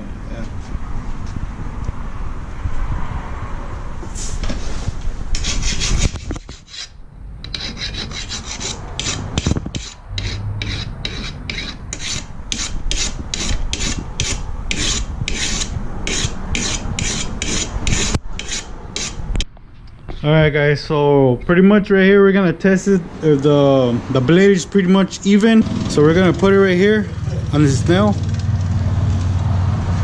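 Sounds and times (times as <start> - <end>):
file rasping on metal blade: 5.4 - 19.2.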